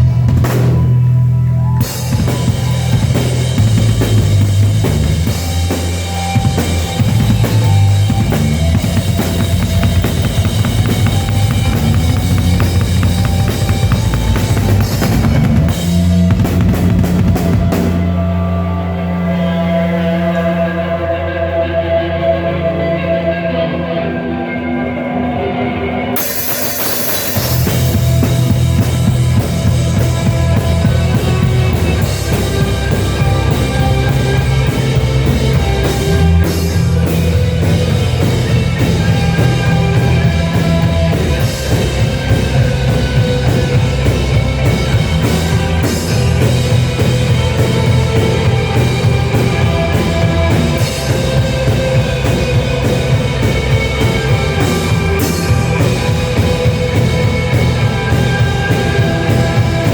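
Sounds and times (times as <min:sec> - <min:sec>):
rock music with drums and bass: 0:00.0 - 0:59.9.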